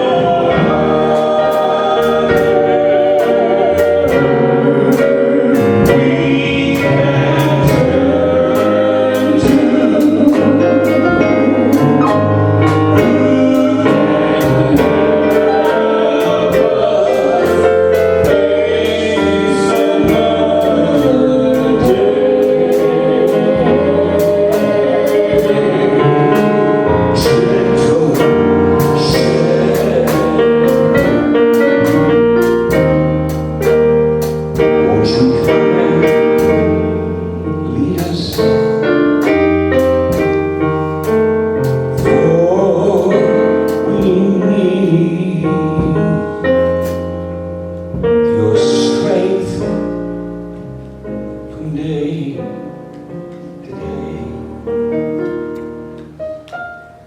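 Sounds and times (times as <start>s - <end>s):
steady drum beat: 0.0s - 44.4s
gospel choir singing: 0.0s - 56.5s
bass: 0.0s - 57.0s
piano: 0.0s - 57.0s.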